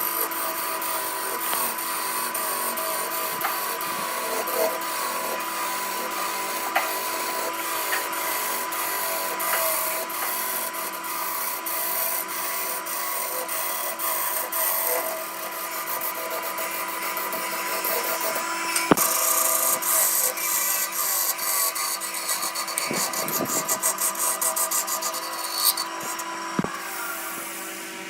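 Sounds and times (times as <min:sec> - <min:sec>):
tool scraping spinning wood: 0:00.0 - 0:27.6
wood lathe motor hum: 0:00.0 - 0:28.0.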